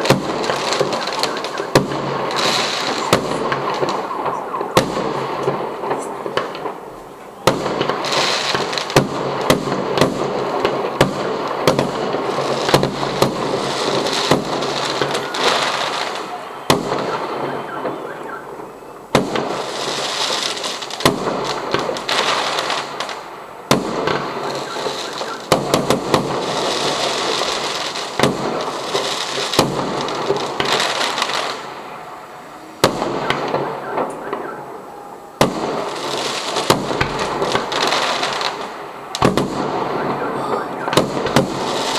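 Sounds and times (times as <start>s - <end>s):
fireworks bangs: 0.0s - 41.9s
fireworks crackle: 0.0s - 41.9s.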